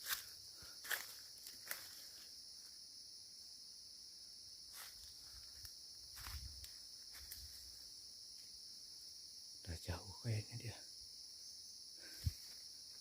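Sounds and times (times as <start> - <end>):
footsteps on leaf litter: 0.0 - 2.2
buzz of forest insects: 0.0 - 13.0.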